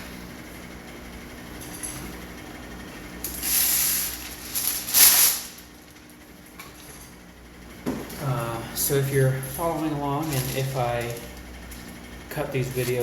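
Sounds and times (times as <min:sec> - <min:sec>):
wax paper tearing: 0:03.3 - 0:05.7.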